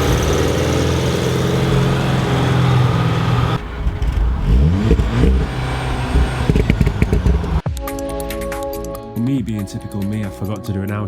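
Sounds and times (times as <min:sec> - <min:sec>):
car engine running: 0:00.0 - 0:07.6
engine revving: 0:00.0 - 0:07.6.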